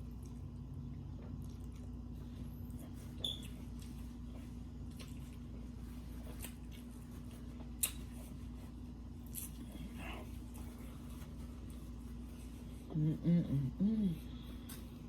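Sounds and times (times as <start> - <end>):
person chewing wetly: 0.0 - 10.8
steady low hum: 0.0 - 15.0.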